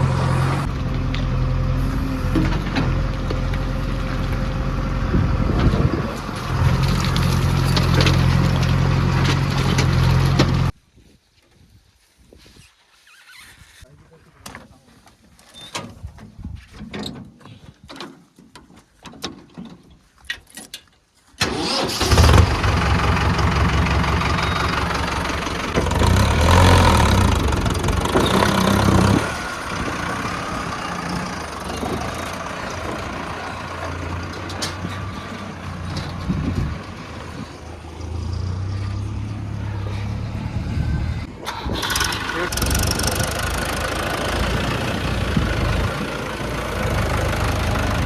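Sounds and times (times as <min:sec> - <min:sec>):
heavy diesel engine running: 0:00.0 - 0:10.7, 0:21.4 - 0:48.0.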